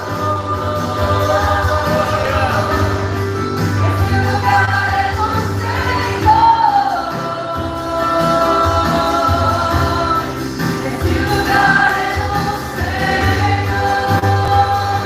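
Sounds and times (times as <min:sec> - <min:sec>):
bass line: 0:00.0 - 0:15.0
voices singing: 0:00.0 - 0:15.0
worship band playing: 0:00.0 - 0:15.0.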